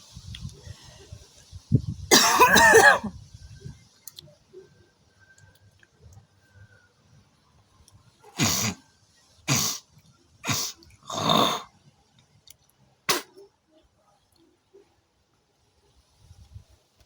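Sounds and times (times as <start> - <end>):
woman coughing hard: 2.1 - 3.1.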